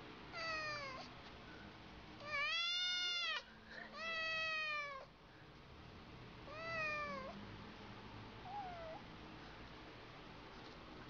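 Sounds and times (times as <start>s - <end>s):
cat meowing: 0.3s - 1.1s, 2.2s - 5.1s, 6.5s - 7.4s, 8.4s - 9.0s.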